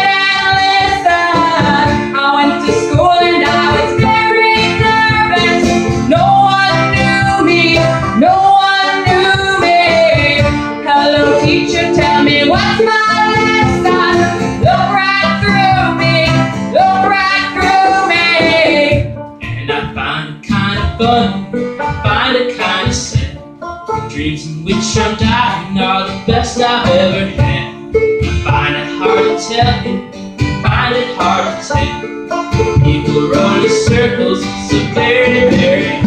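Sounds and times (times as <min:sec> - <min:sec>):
voices singing in harmony: 0:00.0 - 0:21.4, 0:28.5 - 0:30.0, 0:30.6 - 0:32.1, 0:32.8 - 0:36.0
guitar: 0:00.0 - 0:36.0
plucked banjo: 0:00.0 - 0:36.0.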